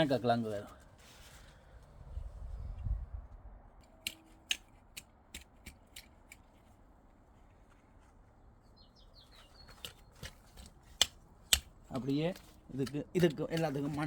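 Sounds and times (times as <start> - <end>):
garden tool clicking in soil: 4.0 - 6.7, 9.6 - 14.0.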